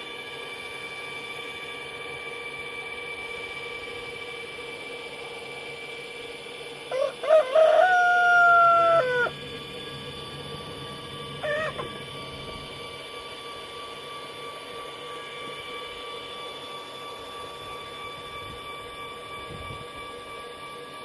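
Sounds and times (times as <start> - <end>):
rooster crowing: 6.9 - 9.4, 11.4 - 12.0.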